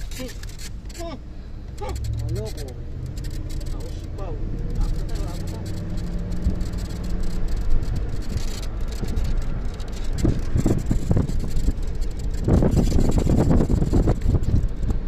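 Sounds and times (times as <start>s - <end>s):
vehicle running: 0.0s - 15.0s
wind buffeting the microphone: 4.0s - 15.0s.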